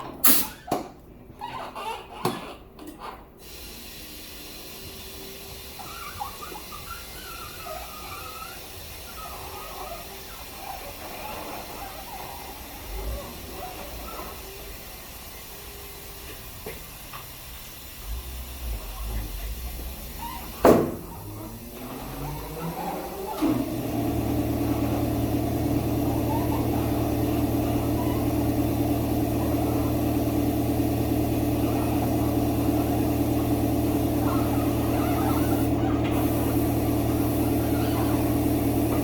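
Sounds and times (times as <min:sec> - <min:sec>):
rubber tire squealing: 0:05.7 - 0:14.5, 0:18.8 - 0:30.6, 0:31.4 - 0:36.2, 0:37.0 - 0:39.0.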